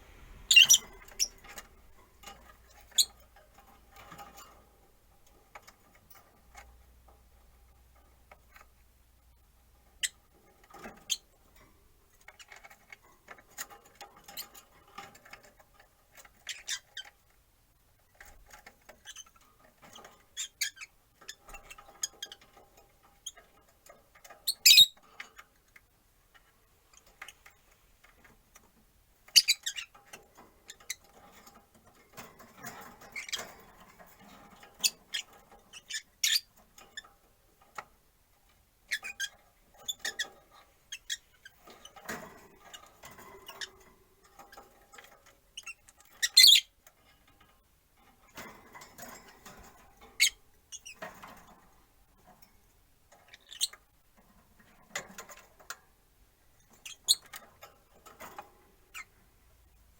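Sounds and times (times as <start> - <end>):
lovebirds chirping: 0.0 - 1.9.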